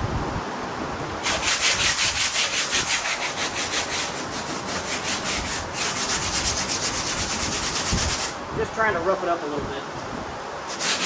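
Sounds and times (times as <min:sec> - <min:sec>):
scuff pad rubbing fiberglass: 0:01.2 - 0:08.4, 0:10.7 - 0:11.0.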